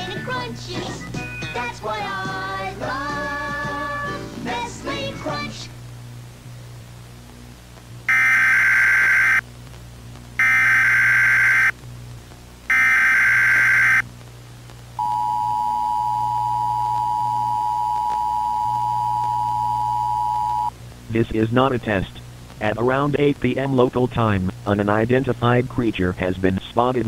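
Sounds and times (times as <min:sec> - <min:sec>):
harsh data bursts: 0:08.1 - 0:09.4, 0:10.4 - 0:11.8, 0:12.7 - 0:14.1
two-tone attention signal: 0:08.1 - 0:09.4, 0:10.4 - 0:11.7, 0:15.0 - 0:20.7.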